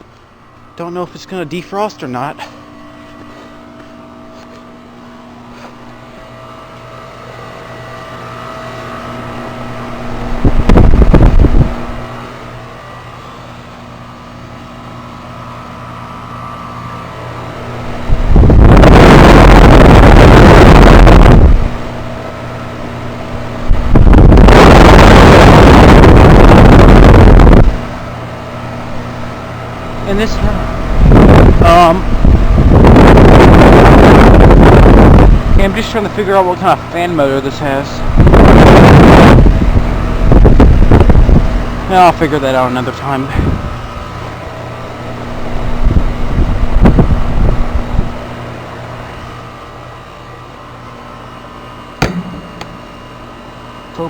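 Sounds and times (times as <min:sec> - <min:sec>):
heat pump humming: 0:00.0 - 0:54.0
wind buffeting microphone: 0:09.5 - 0:12.2, 0:17.8 - 0:22.2, 0:22.9 - 0:35.8, 0:38.0 - 0:41.9, 0:43.3 - 0:44.1, 0:45.5 - 0:48.2.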